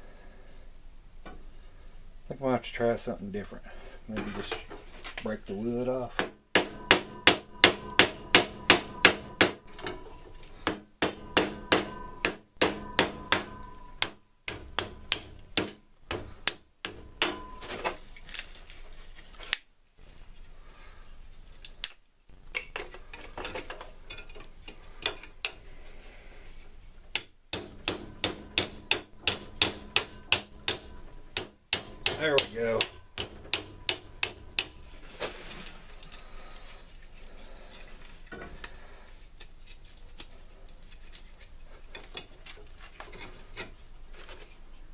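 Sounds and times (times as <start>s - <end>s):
hammer blows on metal: 6.1s - 10.0s, 10.6s - 17.7s.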